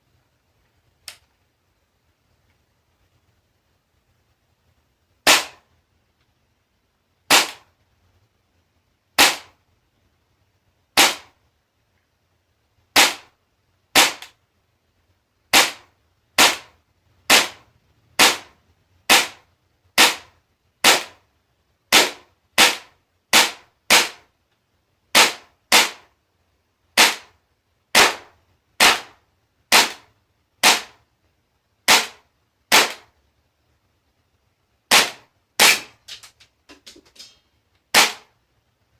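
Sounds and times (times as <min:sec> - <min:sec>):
airsoft gun shots: 0:05.2 - 0:05.7, 0:07.3 - 0:07.7, 0:09.2 - 0:09.6, 0:11.0 - 0:11.4, 0:13.0 - 0:13.3, 0:13.9 - 0:14.4, 0:15.5 - 0:21.2, 0:21.9 - 0:24.2, 0:25.1 - 0:26.1, 0:27.0 - 0:31.0, 0:31.9 - 0:33.1, 0:34.9 - 0:36.1, 0:37.9 - 0:38.3.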